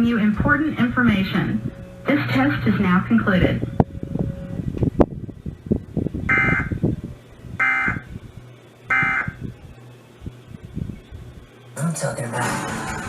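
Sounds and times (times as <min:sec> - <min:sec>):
buzzy digital data bursts: 0:00.0 - 0:04.7, 0:05.6 - 0:06.9, 0:07.5 - 0:11.8.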